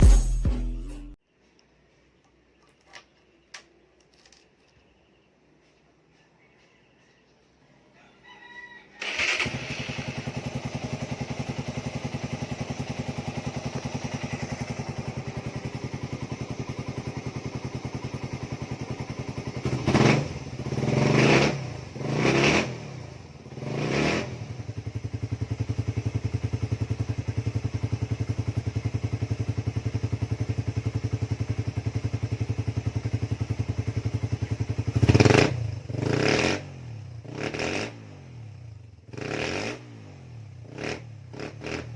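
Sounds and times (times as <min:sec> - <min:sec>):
motorcycle engine idling and revving: 0:09.0 - 0:41.9.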